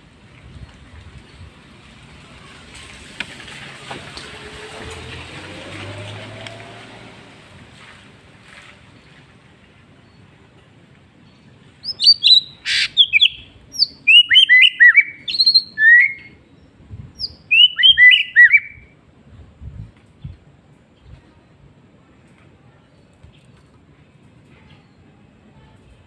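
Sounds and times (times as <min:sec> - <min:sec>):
bird singing whistled notes: 0:11.2 - 0:18.9.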